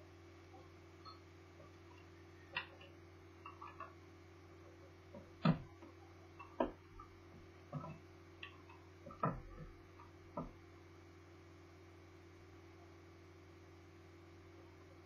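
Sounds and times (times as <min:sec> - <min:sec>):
steady low hum: 0:00.0 - 0:15.0
clicks and knocks of laptop parts: 0:05.2 - 0:05.7.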